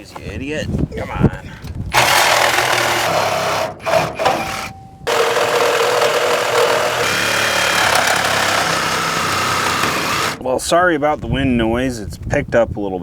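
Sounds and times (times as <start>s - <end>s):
reciprocating saw cutting steel: 1.9s - 10.4s.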